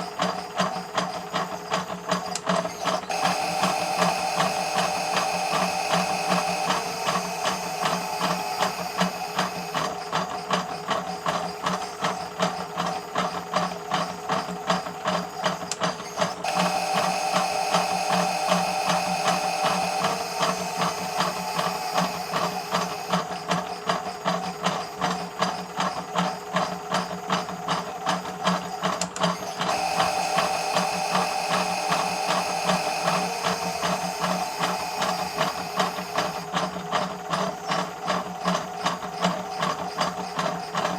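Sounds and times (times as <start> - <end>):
small electric motor whirring: 2.3 - 12.7, 15.6 - 23.9, 29.0 - 36.7.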